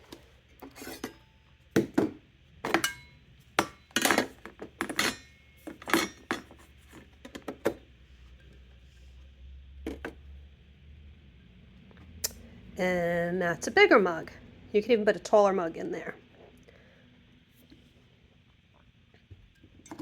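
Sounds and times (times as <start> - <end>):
mugs knocking on plastic: 1.8 - 2.8.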